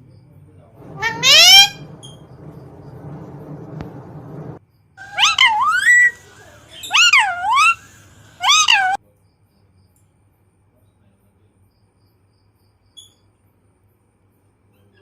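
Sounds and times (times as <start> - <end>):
parrot meow-like calls: 0.8 - 9.0.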